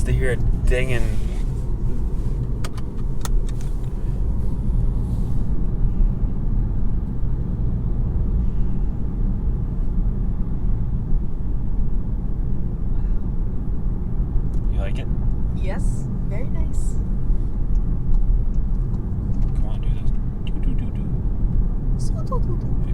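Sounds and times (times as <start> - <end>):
car engine and road noise drone: 0.0 - 22.9.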